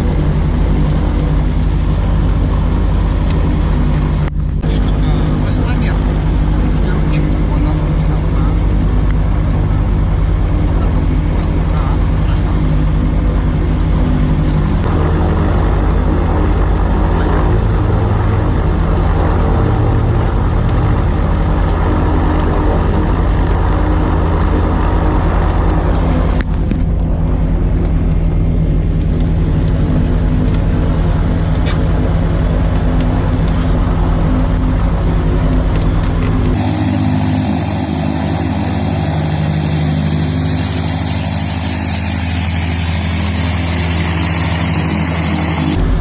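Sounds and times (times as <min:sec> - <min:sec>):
propeller engine drone: 0:00.0 - 0:46.0
rushing hiss: 0:36.6 - 0:45.8.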